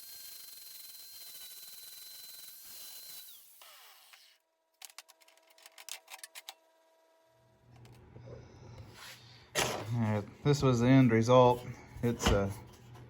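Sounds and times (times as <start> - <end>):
power tool whining: 0.0 - 4.4.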